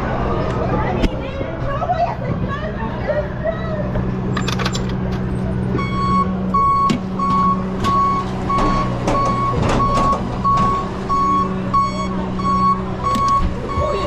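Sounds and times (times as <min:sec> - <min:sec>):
truck engine idling: 0:00.0 - 0:14.0
truck reversing alarm beeping: 0:05.7 - 0:14.0.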